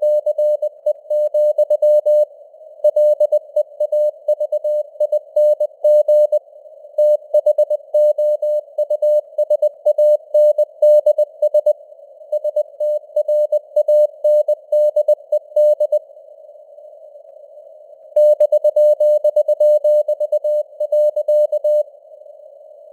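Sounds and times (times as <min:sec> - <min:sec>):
morse code tone: 0:18.2 - 0:21.8.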